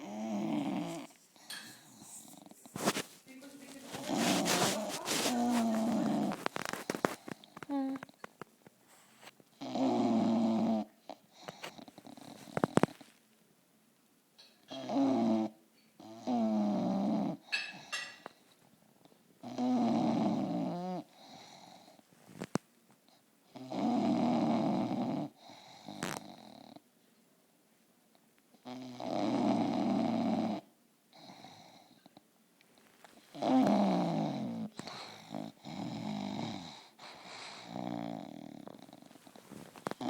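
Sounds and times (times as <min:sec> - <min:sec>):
dog snoring: 0:00.0 - 0:08.3, 0:08.9 - 0:13.1, 0:14.7 - 0:17.9, 0:19.4 - 0:22.0, 0:23.5 - 0:26.8, 0:28.6 - 0:32.1, 0:33.0 - 0:40.0
dog breathing softly: 0:00.6 - 0:08.2, 0:33.1 - 0:40.0.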